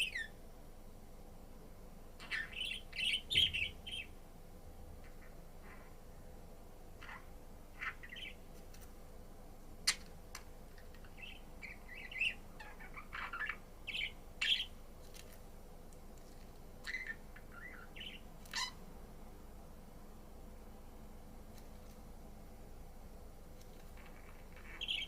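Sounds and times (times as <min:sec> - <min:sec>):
budgerigar chirping and warbling: 0:00.0 - 0:00.3, 0:02.2 - 0:04.1, 0:07.0 - 0:08.4, 0:11.1 - 0:14.7, 0:16.8 - 0:18.8, 0:24.0 - 0:25.0.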